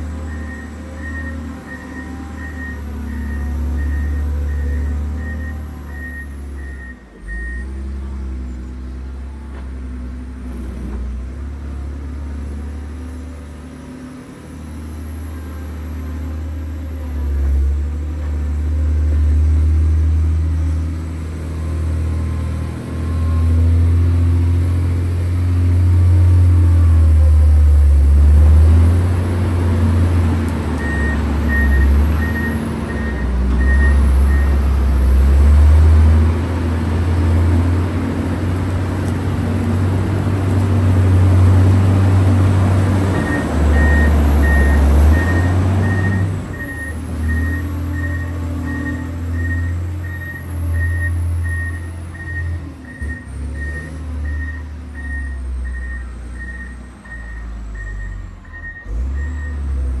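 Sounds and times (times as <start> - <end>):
diesel engine running under load: 0.0 - 60.0
reversing alarm beeping: 0.2 - 7.8, 27.6 - 35.5, 43.1 - 59.7.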